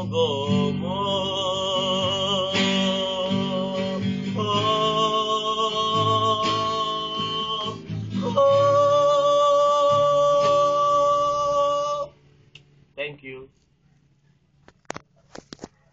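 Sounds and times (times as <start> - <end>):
person singing long notes: 0.0 - 12.1
strummed guitar chords: 0.0 - 12.2.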